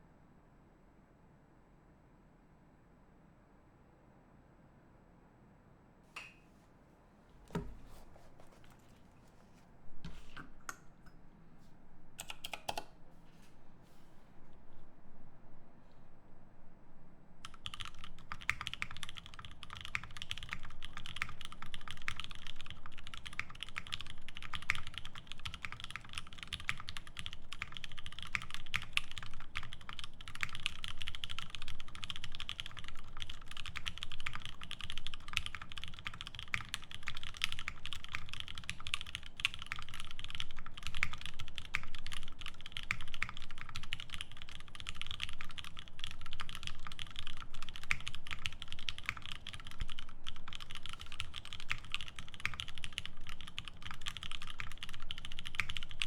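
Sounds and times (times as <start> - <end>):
mechanical keyboard typing: 12.2 - 13.0, 17.4 - 56.0.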